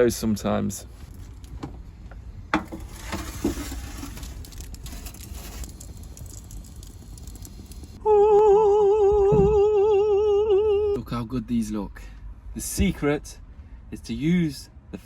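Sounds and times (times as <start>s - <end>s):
voice holding a long vibrato note: 8.0s - 11.0s.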